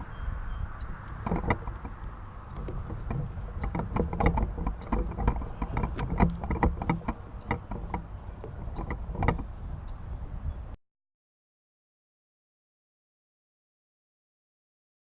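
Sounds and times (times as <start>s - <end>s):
low wind rumble on microphone: 0.0s - 10.8s.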